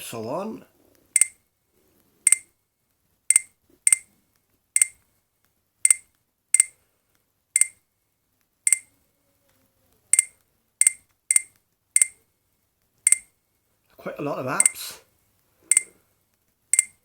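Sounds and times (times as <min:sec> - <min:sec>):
phone key beeps: 0:01.2 - 0:01.4, 0:02.3 - 0:02.5, 0:03.3 - 0:04.1, 0:04.8 - 0:05.0, 0:07.6 - 0:07.8, 0:08.7 - 0:08.9, 0:10.2 - 0:12.2, 0:13.1 - 0:13.3, 0:15.7 - 0:15.9, 0:16.8 - 0:17.0.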